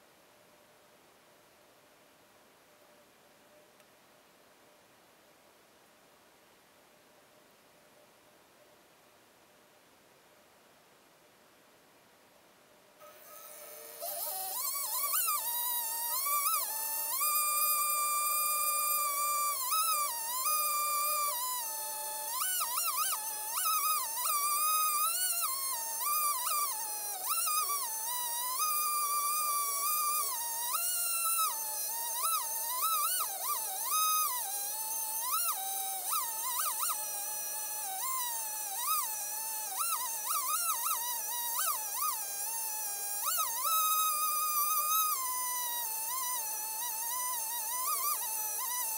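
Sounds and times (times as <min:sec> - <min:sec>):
sliding whistle-like lead melody: 0:13.1 - 0:21.4.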